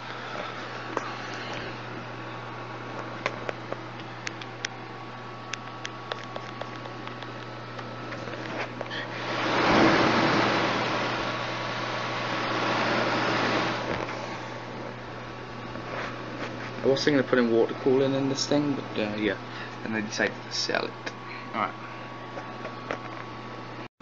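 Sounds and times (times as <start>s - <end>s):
computer fan hum: 0.0s - 23.9s
loud rushing noise: 9.2s - 13.9s.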